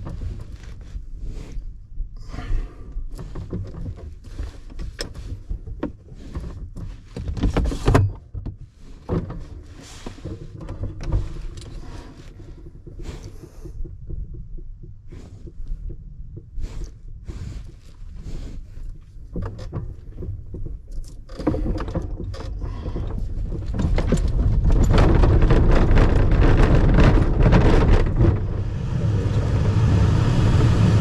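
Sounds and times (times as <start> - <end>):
airframe knocks and rattles: 19.2 - 29.2
glider cockpit low rumble: 21.6 - 31.0.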